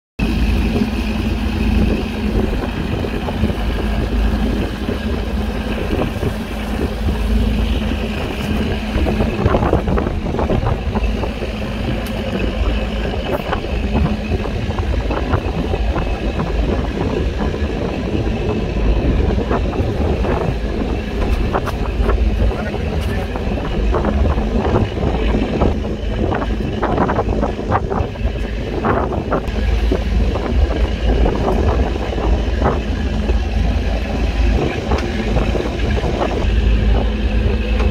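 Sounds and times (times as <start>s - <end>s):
boat engine running: 0.2s - 37.9s.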